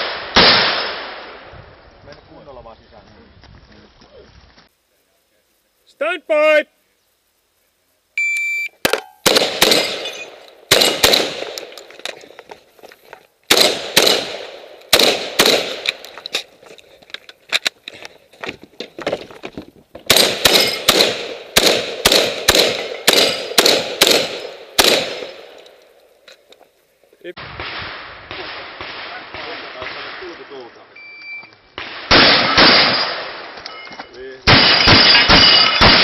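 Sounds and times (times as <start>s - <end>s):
shotgun firing rapid shots: 0.0s - 1.3s, 9.2s - 10.1s, 10.7s - 11.7s, 13.5s - 16.0s, 20.1s - 25.5s, 31.8s - 33.5s, 34.5s - 36.0s
shot timer beep: 8.2s - 8.8s.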